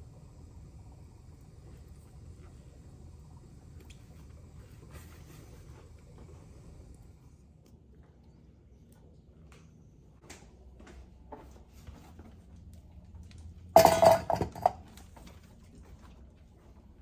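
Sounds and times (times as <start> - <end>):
glass jars clicking: 13.8 - 14.8
glass jars clinking and knocking: 13.8 - 14.8.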